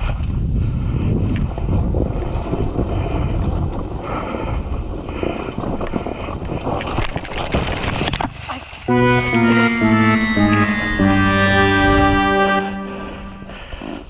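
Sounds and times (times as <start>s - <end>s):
wind buffeting microphone: 0.1s - 8.2s.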